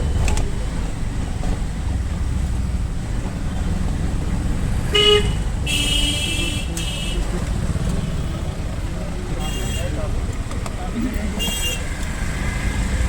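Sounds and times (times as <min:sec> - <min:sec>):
road traffic rumble: 0:00.0 - 0:13.0
car horns honking: 0:04.9 - 0:08.4, 0:09.4 - 0:10.1, 0:11.2 - 0:12.0.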